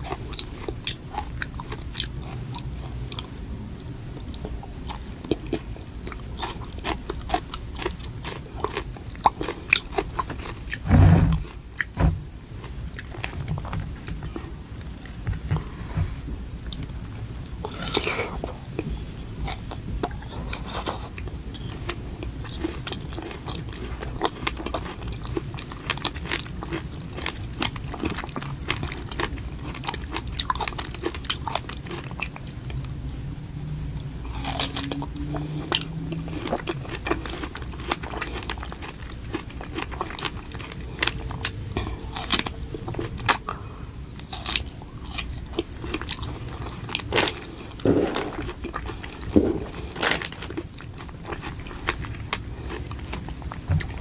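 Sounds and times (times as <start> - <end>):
person chewing crunchy food: 4.3 - 12.0, 17.6 - 32.8, 34.2 - 54.0.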